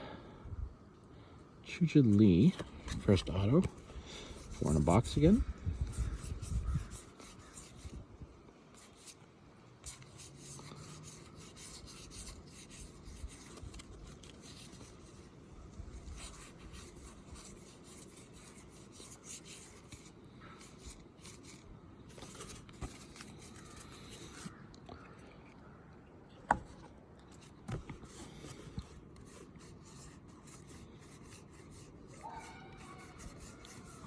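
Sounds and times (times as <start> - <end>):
trading cards rubbing and ticking: 4.3 - 8.0, 9.9 - 15.2, 16.0 - 24.6, 27.4 - 34.0.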